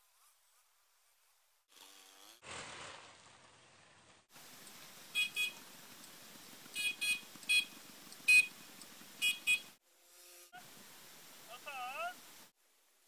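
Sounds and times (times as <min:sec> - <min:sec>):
steady hiss: 0:02.5 - 0:09.8, 0:10.4 - 0:13.0
short high-pitched beeps: 0:06.8 - 0:07.7, 0:08.3 - 0:08.5, 0:09.2 - 0:09.7.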